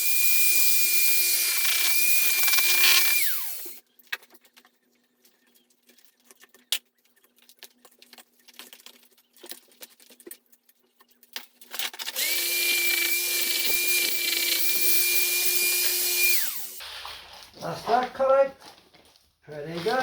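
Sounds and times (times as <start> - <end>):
stone-cutting saw grinding: 0.0 - 3.8, 12.1 - 16.8.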